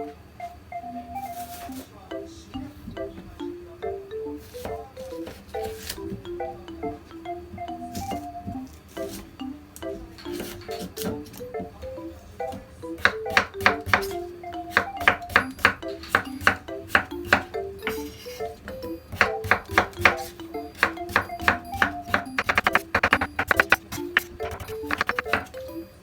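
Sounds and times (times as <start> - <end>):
background music with melody: 0.0 - 26.0
knife chopping on cutting board: 10.3 - 11.4, 13.0 - 25.5.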